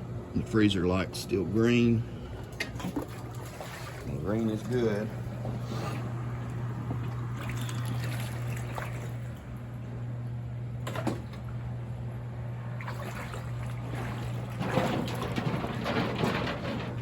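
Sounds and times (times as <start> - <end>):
water sloshing and trickling: 1.4 - 17.0
short water splashes: 2.4 - 9.8, 10.8 - 11.7, 12.7 - 16.0.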